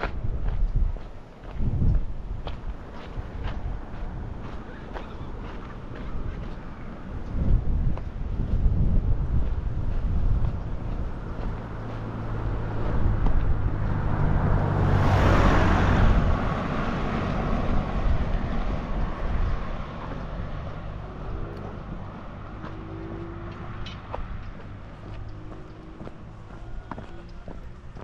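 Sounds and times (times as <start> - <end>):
car passing by: 8.3 - 28.0.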